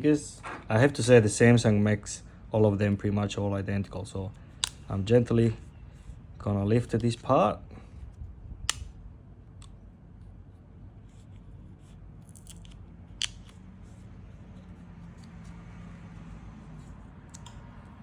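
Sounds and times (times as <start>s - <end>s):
low steady hum: 0.0s - 18.0s
small clicks and crinkles: 11.0s - 16.1s.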